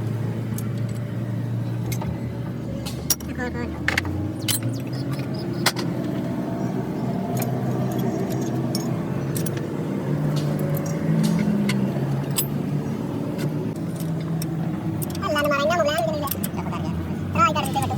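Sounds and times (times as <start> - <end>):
engine running low hum: 0.0 - 17.9
metal tools clinking on engine parts: 2.8 - 5.9, 7.3 - 9.7, 10.3 - 12.7, 13.4 - 15.2.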